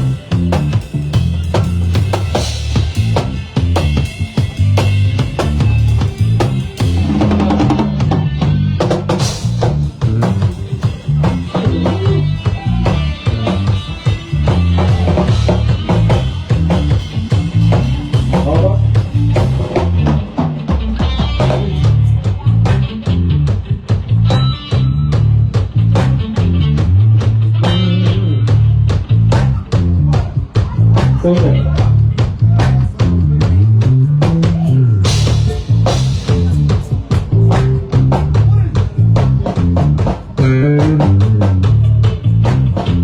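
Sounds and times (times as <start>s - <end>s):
bass line: 0.0s - 43.0s
kick drum: 36.3s - 43.0s.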